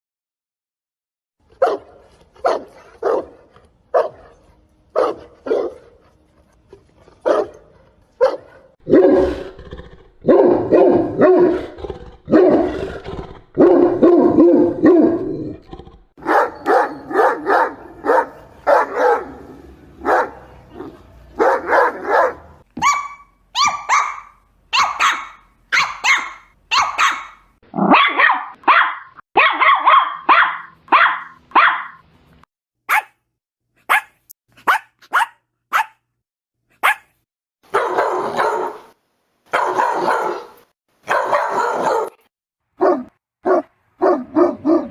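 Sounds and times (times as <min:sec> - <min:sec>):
dogs barking deeply: 0:07.2 - 0:23.0, 0:23.6 - 0:32.0, 0:37.7 - 0:44.9
small dogs yapping: 0:21.4 - 0:32.0, 0:37.7 - 0:38.9, 0:39.5 - 0:42.2.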